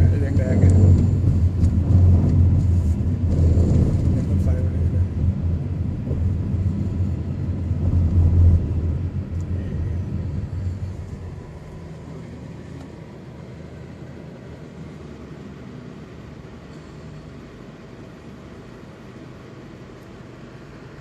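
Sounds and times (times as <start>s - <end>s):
diesel railcar engine passing: 0.0s - 15.8s.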